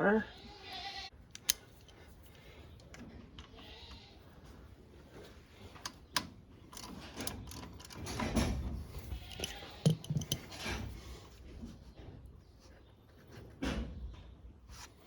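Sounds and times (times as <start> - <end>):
metal tool clicks and clinks: 6.7 - 8.4, 9.2 - 10.7.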